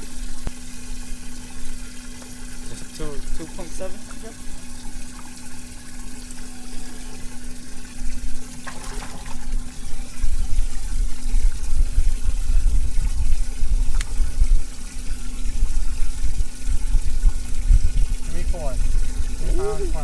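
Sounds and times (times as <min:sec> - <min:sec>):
steady low hum: 0:00.0 - 0:20.0
water running and splashing: 0:00.0 - 0:20.0.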